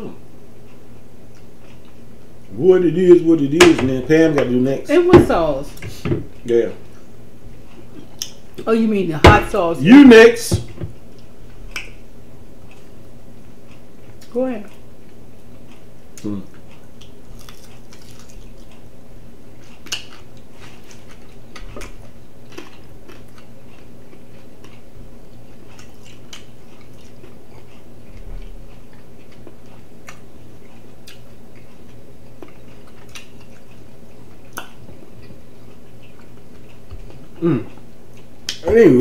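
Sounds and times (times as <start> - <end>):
steady low hum: 0.0 - 39.0
person chewing: 0.6 - 2.6, 7.6 - 8.6, 12.6 - 18.9, 19.5 - 38.7.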